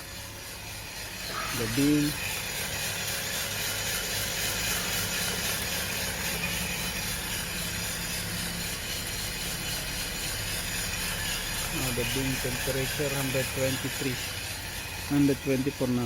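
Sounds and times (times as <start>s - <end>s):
coffee beans tumbling in drum: 0.0s - 16.0s
fan whir and motor hum: 0.0s - 16.0s.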